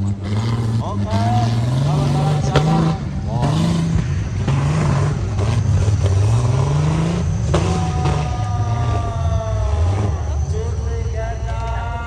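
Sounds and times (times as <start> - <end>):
engine revving: 0.0 - 12.0
long falling tone: 5.6 - 12.0.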